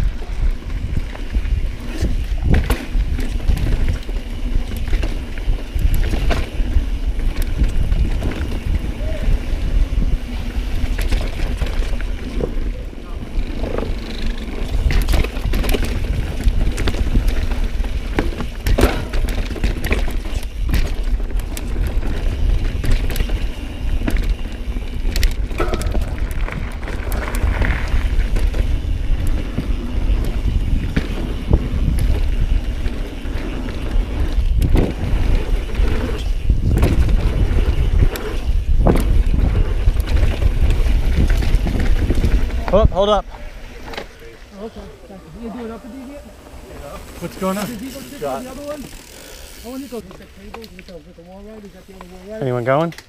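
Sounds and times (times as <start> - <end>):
wind buffeting: 0.0 - 52.7
bike tyres on dirt: 0.0 - 53.0
bike clattering over rocks: 13.4 - 43.2.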